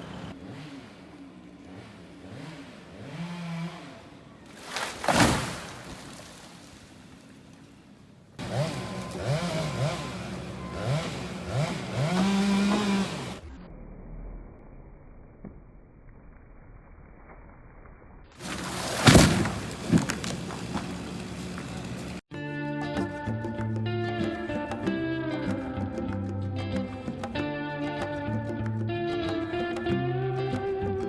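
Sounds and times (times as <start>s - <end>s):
chainsaw engine revving: 0.0s - 5.9s, 8.4s - 13.7s, 18.4s - 22.2s.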